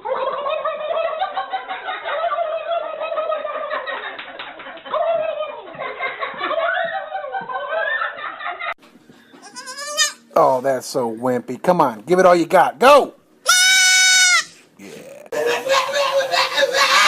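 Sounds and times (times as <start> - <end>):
laughter: 0.0 - 8.8, 15.3 - 17.0.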